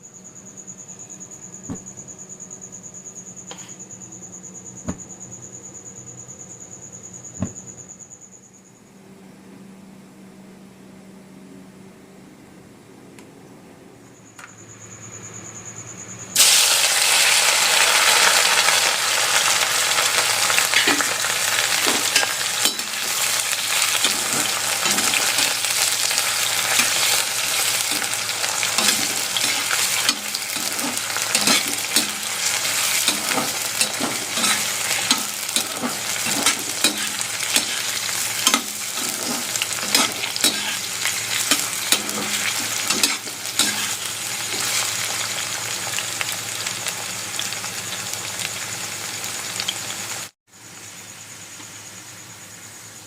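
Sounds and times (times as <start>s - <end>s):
fries sizzling in hot oil: 16.4s - 52.8s.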